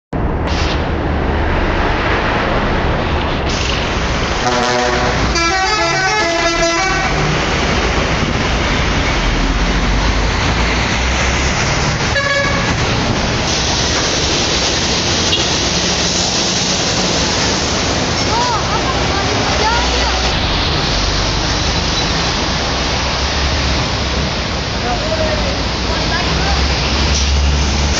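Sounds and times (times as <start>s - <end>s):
loud steady background noise: 0.2s - 27.9s
musical bus air horn: 4.4s - 7.4s, 12.1s - 12.8s.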